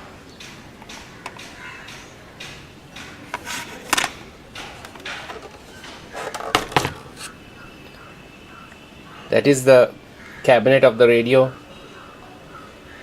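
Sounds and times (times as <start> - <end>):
sharp knocks: 0.4 - 7.3
handling rustles and scrapes: 3.2 - 7.4.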